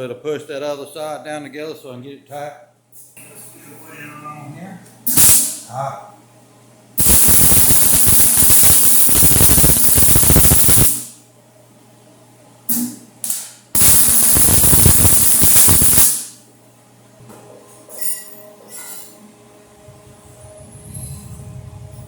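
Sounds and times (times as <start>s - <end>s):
arc strikes: 5.1s - 5.7s, 7.0s - 11.2s, 12.7s - 16.4s
arc welding crackle and hiss: 5.1s - 5.7s, 7.0s - 11.2s, 12.7s - 16.4s.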